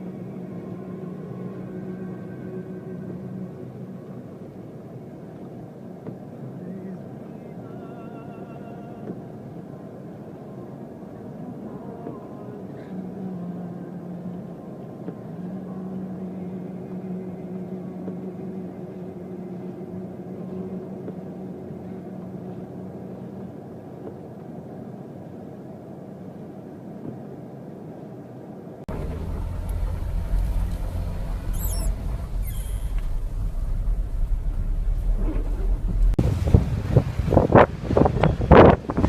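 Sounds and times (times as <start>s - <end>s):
vehicle engine hum: 0.0s - 7.6s, 9.0s - 24.0s, 28.9s - 39.0s
wind buffeting microphone: 28.9s - 39.0s.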